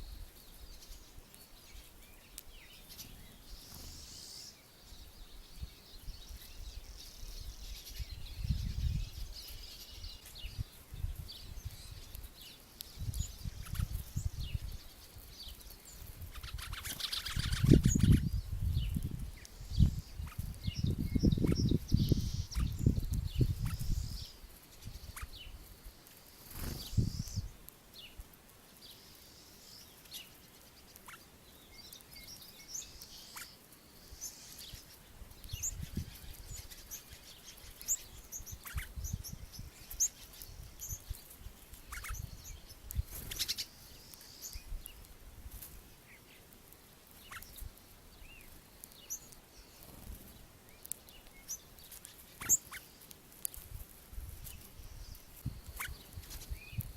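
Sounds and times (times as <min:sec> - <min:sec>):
small birds chirping: 0:00.0 - 0:56.9.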